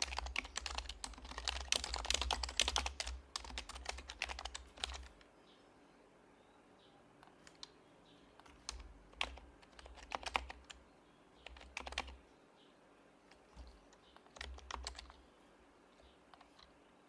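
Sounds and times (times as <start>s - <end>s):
soft keyboard typing: 0.0s - 5.3s, 7.2s - 10.8s, 11.4s - 12.2s, 13.3s - 16.8s.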